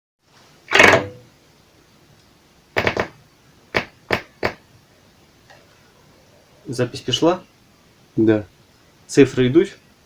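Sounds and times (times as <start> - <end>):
sharp knocks and clicks: 0.7 - 1.2, 2.8 - 3.2, 3.8 - 4.6.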